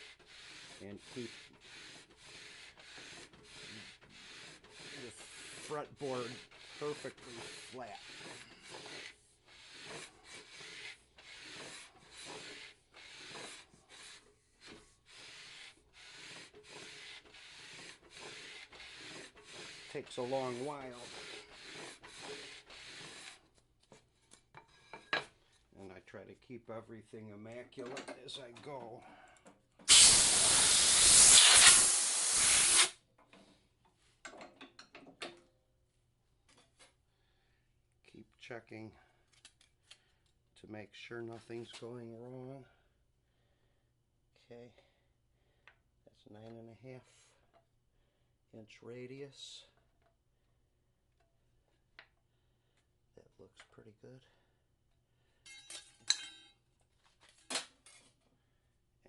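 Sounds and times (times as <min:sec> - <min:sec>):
sandpaper rubbing on wood: 0:00.0 - 0:23.4, 0:29.9 - 0:32.9
compressed air blast: 0:29.9 - 0:32.9.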